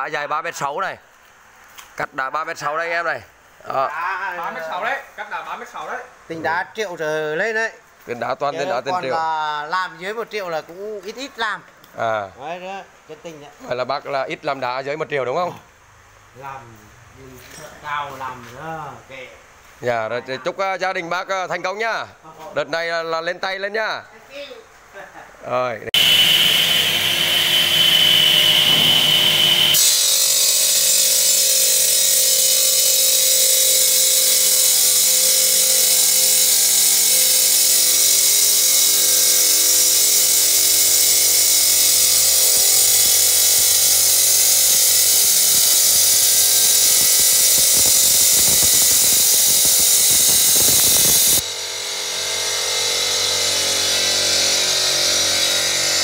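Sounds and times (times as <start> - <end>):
saw cutting stone: 26.0 - 56.0
stone saw whining: 26.0 - 56.0.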